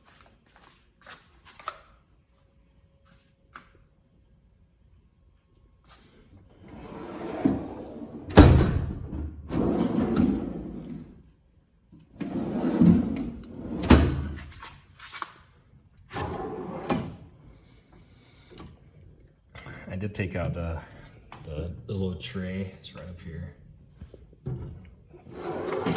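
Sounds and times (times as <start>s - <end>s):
tool box drawers rolling: 6.6s - 11.2s, 12.2s - 14.5s, 16.1s - 17.2s, 25.2s - 25.9s.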